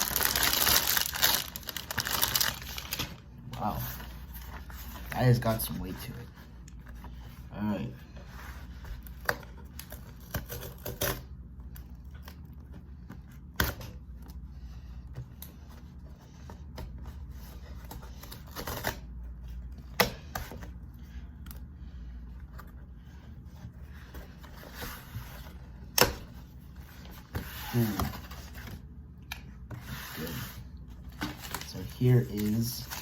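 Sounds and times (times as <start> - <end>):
packaging rustle: 0.0 - 3.3
low steady hum: 0.0 - 33.0.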